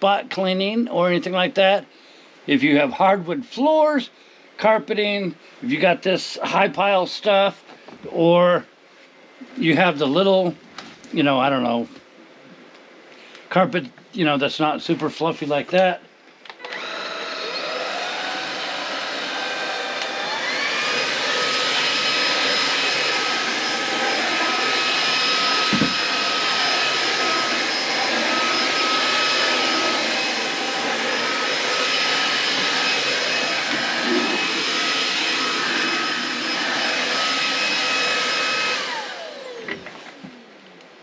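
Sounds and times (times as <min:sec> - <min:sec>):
stick vacuum whining: 0:16.5 - 0:40.2.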